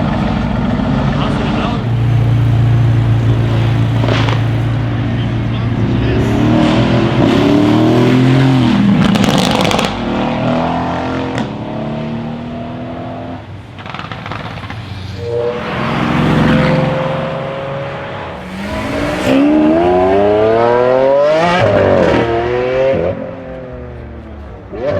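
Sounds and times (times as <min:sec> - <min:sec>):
car engine accelerating hard: 0:00.0 - 0:23.9
exhaust crackles: 0:01.2 - 0:10.0, 0:18.3 - 0:22.3.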